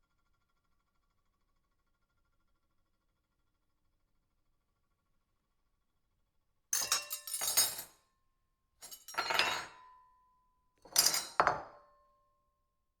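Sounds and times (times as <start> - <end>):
cutlery clinking on ceramic plate: 6.8 - 7.9, 8.8 - 10.0, 10.9 - 11.9.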